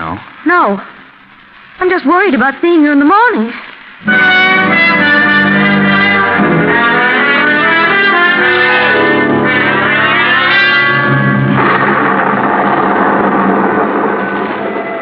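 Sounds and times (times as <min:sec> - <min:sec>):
dramatic brass orchestral music: 0:04.0 - 0:15.0.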